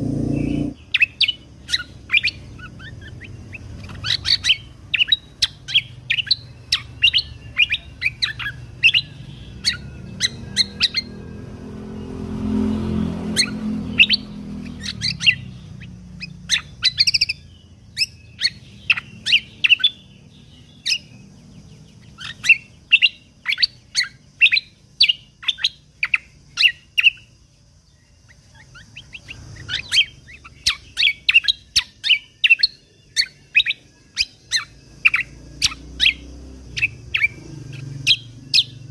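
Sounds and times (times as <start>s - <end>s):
low rumble: 0.0s - 0.8s
songbird chirping and whistling: 0.0s - 38.9s.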